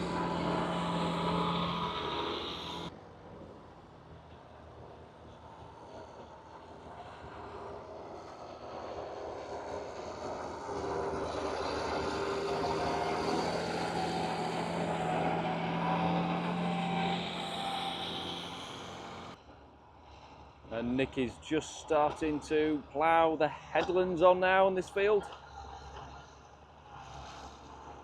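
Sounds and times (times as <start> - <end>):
tractor diesel engine running: 0.0 - 2.9.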